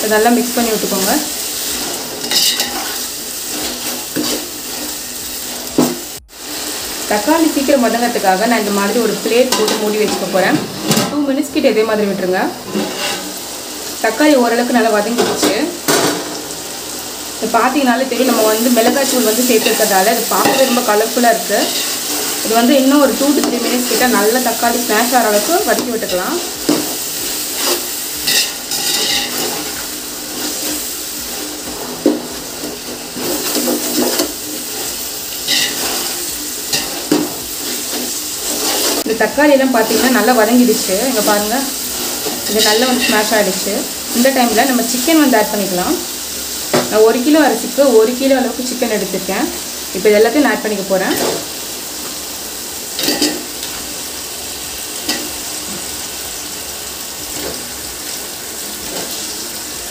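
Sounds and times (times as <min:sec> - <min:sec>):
food sizzling in oil: 0:00.0 - 0:59.9
ladle scraping a pot: 0:12.7 - 0:13.3.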